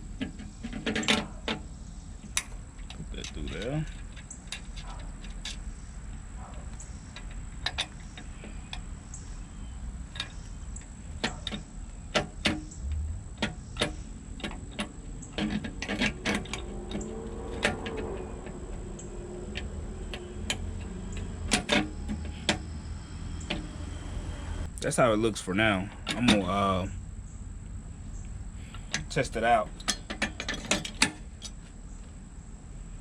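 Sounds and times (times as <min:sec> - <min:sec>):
metallic clicks of bracket hardware: 0:02.2 - 0:23.8, 0:28.2 - 0:31.7.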